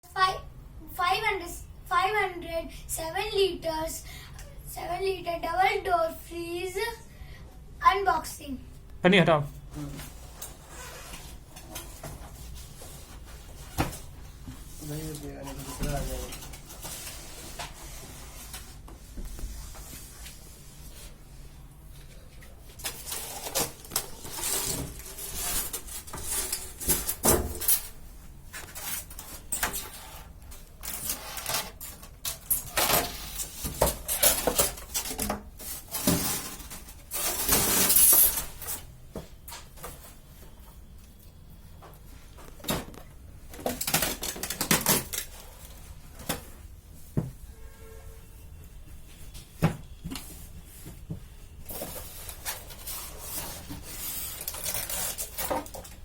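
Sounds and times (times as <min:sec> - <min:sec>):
plastic film crinkling and ripping: 0:52.2 - 0:55.9.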